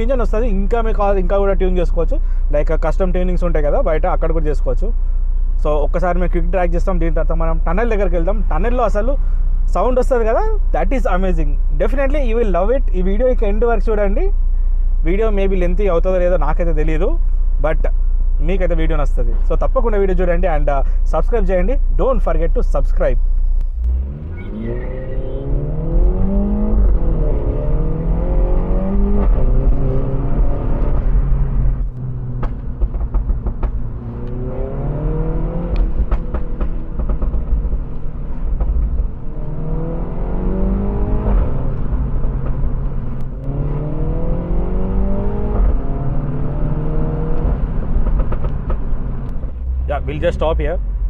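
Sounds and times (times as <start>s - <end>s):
car engine accelerating hard: 23.6s - 51.0s
exhaust pops: 28.4s - 40.1s, 41.0s - 43.9s, 47.3s - 50.9s.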